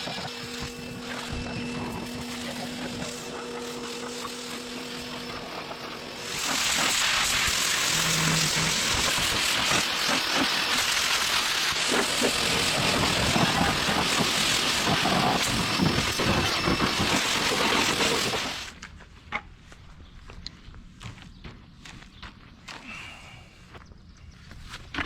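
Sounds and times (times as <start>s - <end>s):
water spraying against car: 0.0s - 18.7s.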